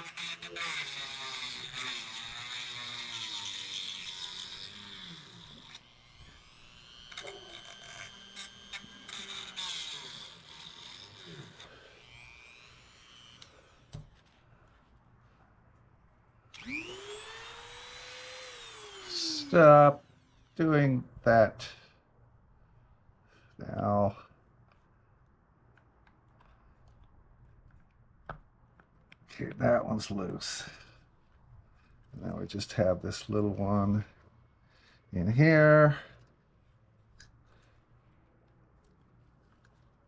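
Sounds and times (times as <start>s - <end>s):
handheld power tool whine: 0.0s - 14.9s, 16.4s - 21.0s.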